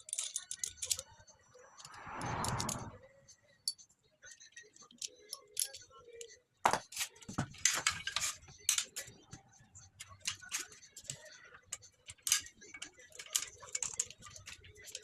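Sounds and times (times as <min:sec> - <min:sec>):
metal parts clicking and clinking: 0:00.0 - 0:01.1, 0:04.9 - 0:06.3, 0:06.9 - 0:09.2, 0:10.0 - 0:15.0.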